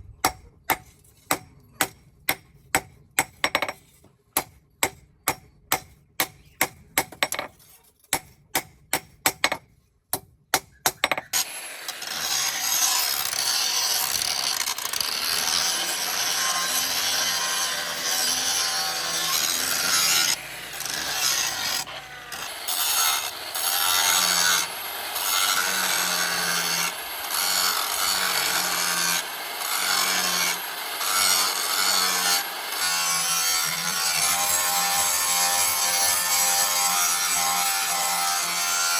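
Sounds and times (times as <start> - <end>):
hammer striking steel: 0.2 - 3.8
abrasive tool rasping steel: 10.2 - 38.9.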